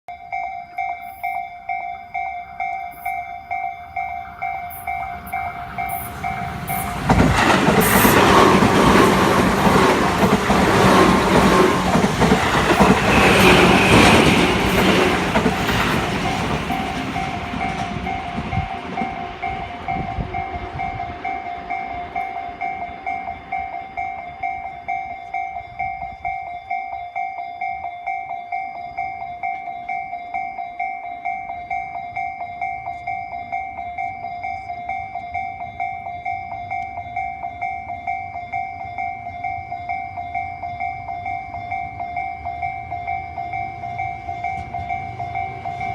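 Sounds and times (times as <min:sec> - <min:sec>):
level crossing alarm ringing: 0:00.1 - 0:45.9
train rushing past: 0:03.8 - 0:25.0, 0:39.6 - 0:45.9.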